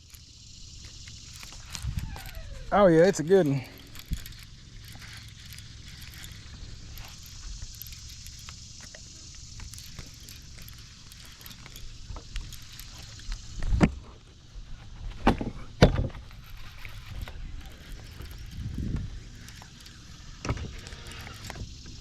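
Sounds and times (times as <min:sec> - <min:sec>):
steady low rumble: 0:00.0 - 0:20.8.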